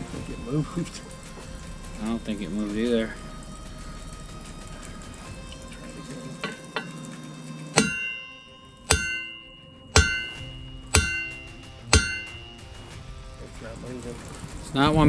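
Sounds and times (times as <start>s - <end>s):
sledgehammer striking metal: 7.8s - 15.0s.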